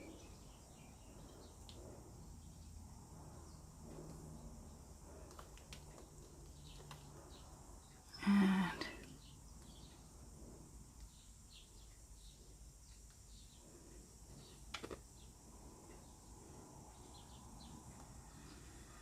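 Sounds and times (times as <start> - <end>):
faint bird chirps: 6.6 - 10.1.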